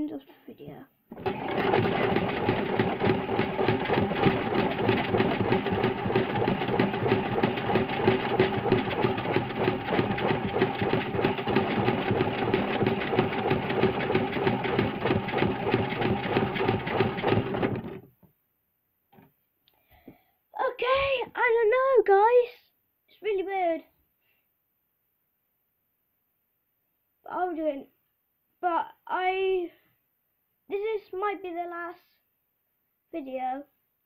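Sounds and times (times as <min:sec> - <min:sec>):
washing machine spinning: 0:01.1 - 0:18.1.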